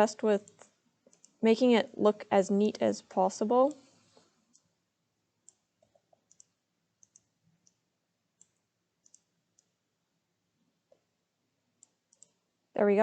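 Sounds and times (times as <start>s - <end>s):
computer mouse clicks: 0.4s - 1.4s, 5.4s - 7.8s, 8.4s - 9.8s, 11.8s - 12.4s.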